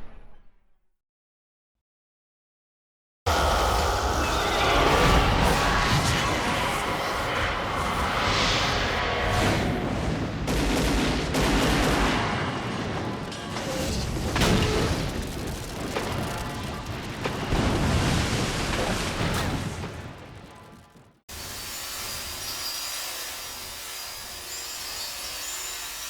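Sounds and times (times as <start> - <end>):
heavy booms and blasts: 3.3 - 21.2.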